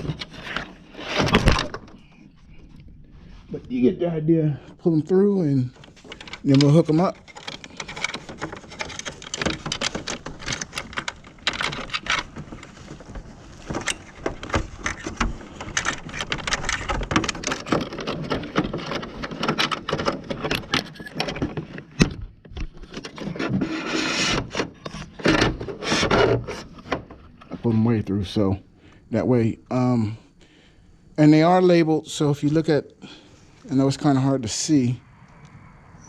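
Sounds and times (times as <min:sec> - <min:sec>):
wires scraping against plastic: 0:00.0 - 0:04.0, 0:04.7 - 0:28.1.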